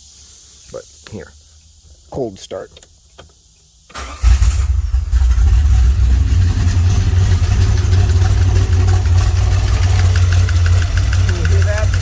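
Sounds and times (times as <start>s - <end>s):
car engine starting and idling: 3.9s - 12.0s
engine ticking: 4.9s - 12.0s.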